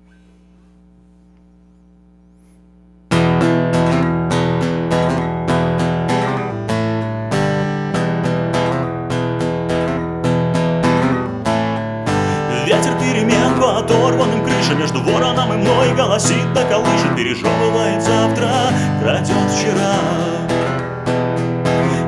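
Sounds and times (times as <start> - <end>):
faint low hum: 0.0 - 3.2
acoustic guitar strumming: 3.1 - 22.0.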